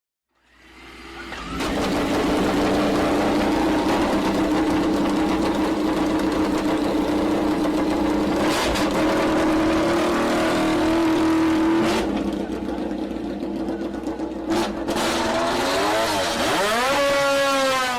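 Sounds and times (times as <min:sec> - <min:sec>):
motorcycle engine idling: 0:01.1 - 0:09.6, 0:12.1 - 0:14.9.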